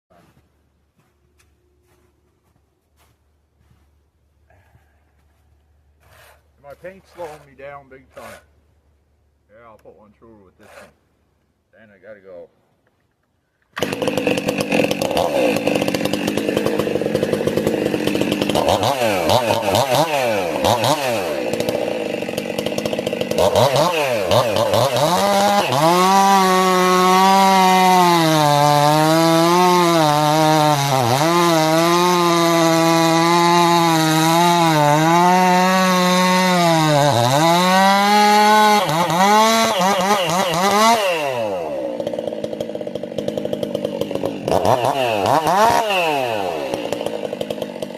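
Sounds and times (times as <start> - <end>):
chainsaw running and cutting: 13.8 - 47.9.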